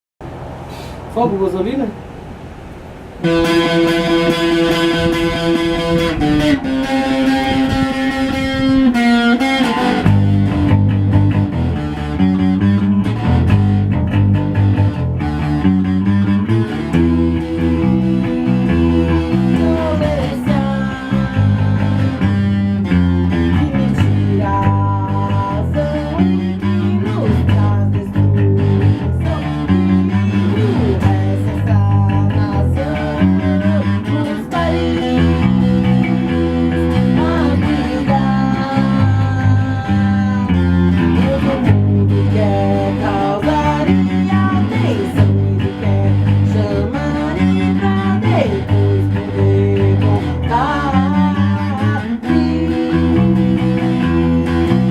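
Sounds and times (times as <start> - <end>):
held guitar note ringing: 3.2 - 25.8
rock band riff: 3.2 - 54.9.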